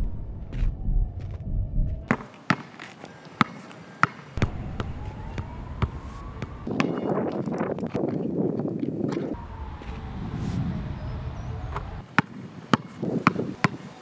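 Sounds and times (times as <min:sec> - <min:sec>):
faint rising siren-like tone: 0:00.0 - 0:02.1, 0:04.4 - 0:06.7, 0:09.4 - 0:12.0
basketball dribbling: 0:02.1 - 0:08.0, 0:11.7 - 0:13.9
steady rushing noise: 0:09.4 - 0:12.6.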